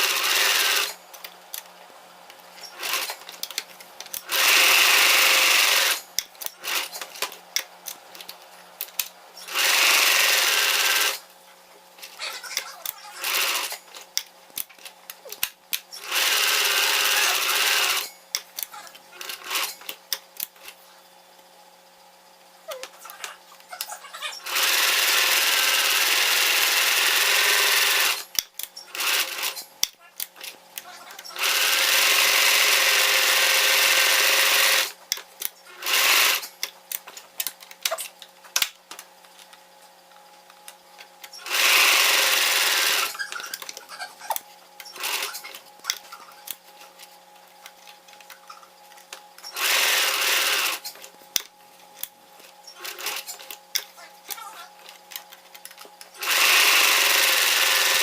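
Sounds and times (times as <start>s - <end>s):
electric sewing machine running: 0.0s - 1.1s, 2.7s - 3.2s, 4.1s - 7.0s, 9.4s - 11.3s, 12.6s - 13.8s, 16.0s - 18.2s, 19.2s - 19.9s, 24.4s - 28.3s, 28.9s - 29.6s, 31.4s - 35.0s, 35.7s - 36.5s, 41.4s - 43.7s, 44.9s - 45.6s, 49.5s - 51.0s, 52.7s - 53.6s, 56.2s - 58.0s.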